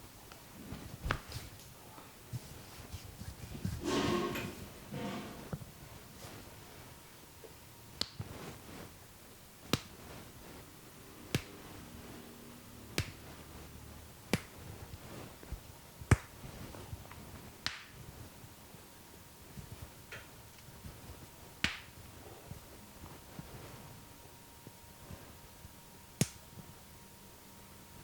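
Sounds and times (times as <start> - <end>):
hands snapping cracks: 9.7 - 10.0, 11.3 - 11.6, 13.0 - 13.2, 14.3 - 14.6, 16.1 - 16.4, 17.6 - 18.0, 21.6 - 21.9, 26.2 - 26.4.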